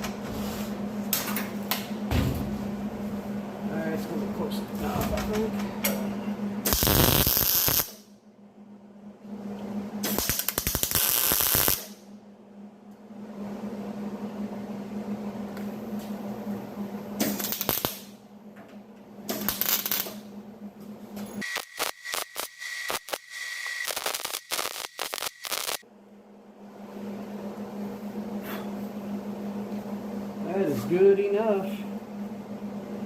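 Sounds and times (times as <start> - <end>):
steady low hum: 0.0 - 33.0.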